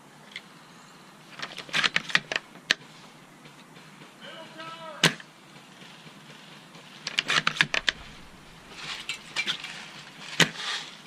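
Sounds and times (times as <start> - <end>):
airsoft rifle shots: 4.3 - 5.3, 7.1 - 10.8
rustling: 5.8 - 11.0
clicks and rattles: 7.1 - 10.5.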